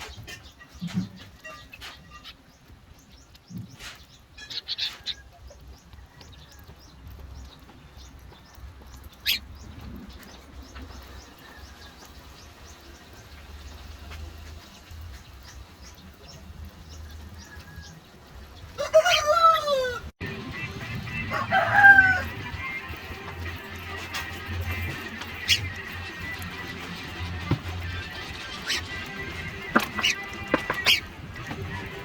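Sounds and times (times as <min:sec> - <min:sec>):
birds chirping and clucking: 0:00.0 - 0:32.0
rooster crowing: 0:18.8 - 0:20.1, 0:21.3 - 0:22.4.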